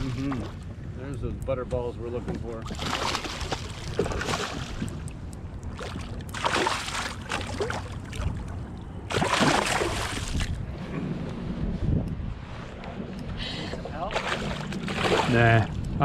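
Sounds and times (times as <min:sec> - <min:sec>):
low rumble on a boat: 0:00.0 - 0:16.0.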